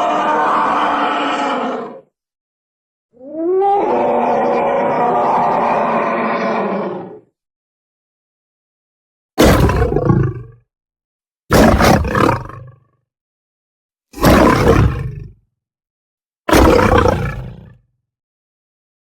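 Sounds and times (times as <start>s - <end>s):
creature roars: 0.0s - 2.1s, 3.2s - 7.3s, 14.2s - 15.1s, 16.5s - 17.4s.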